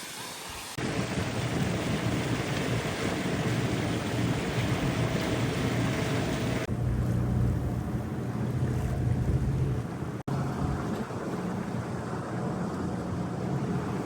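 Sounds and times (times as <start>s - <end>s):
rush of wind and water: 0.0s - 6.7s, 8.4s - 14.0s
wind buffeting microphone: 0.8s - 6.7s.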